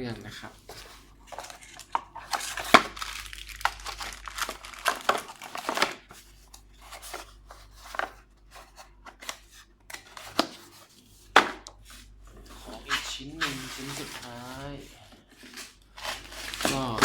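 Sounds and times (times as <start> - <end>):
packaging crinkling and tearing: 1.2 - 6.3, 15.4 - 17.0.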